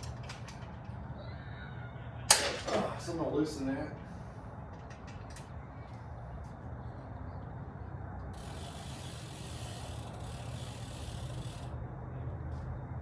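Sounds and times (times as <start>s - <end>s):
ratchet clicking rapidly: 8.3s - 11.8s.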